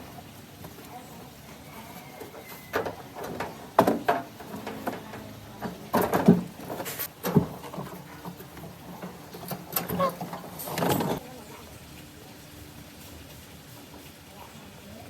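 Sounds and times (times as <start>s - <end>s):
knocks and clatters on machine parts: 2.7s - 11.2s.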